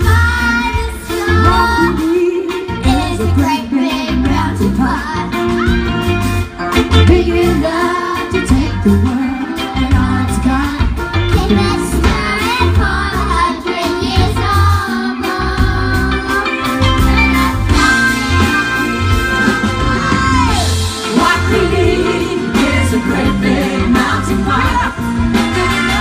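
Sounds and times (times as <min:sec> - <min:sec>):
person singing: 0:06.6 - 0:13.9.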